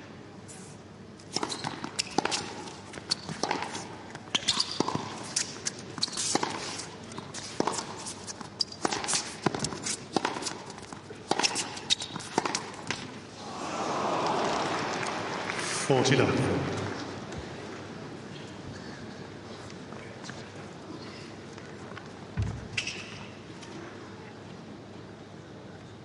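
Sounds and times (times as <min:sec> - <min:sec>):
tennis ball bouncing on court: 0:07.2 - 0:13.2
crowd applauding: 0:13.5 - 0:16.3.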